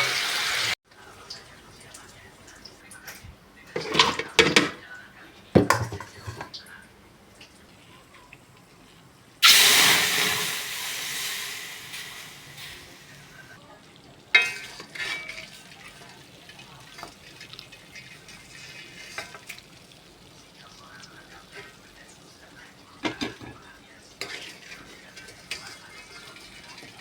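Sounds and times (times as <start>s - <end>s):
food sizzling in hot oil: 0.0s - 1.4s, 9.4s - 27.0s
utensil clanking against pan: 3.8s - 4.8s, 5.5s - 6.6s, 14.3s - 19.9s, 22.9s - 27.0s
stirring and clinking: 14.3s - 27.0s.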